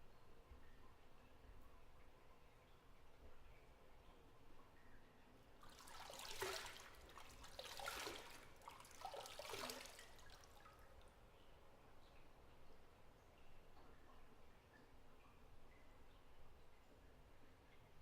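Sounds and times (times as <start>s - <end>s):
water dripping: 0.0s - 18.0s
bathwater splashing: 5.6s - 10.7s.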